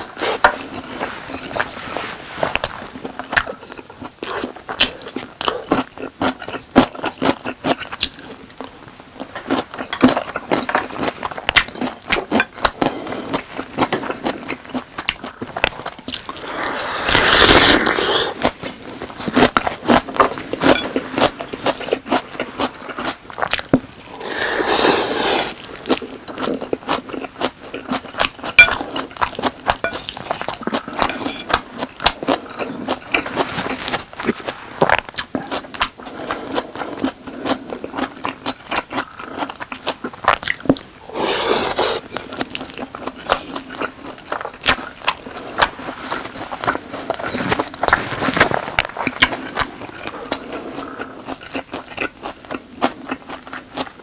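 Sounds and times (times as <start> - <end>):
chewing and crunching: 2.6 - 54.0
utensil scraping: 24.1 - 25.7, 29.8 - 30.5, 33.1 - 34.9, 40.9 - 42.2.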